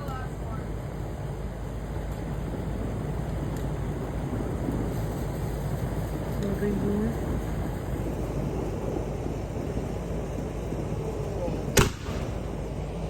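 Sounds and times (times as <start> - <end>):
low outdoor rumble: 0.0 - 13.0
firework bang: 11.8 - 12.8.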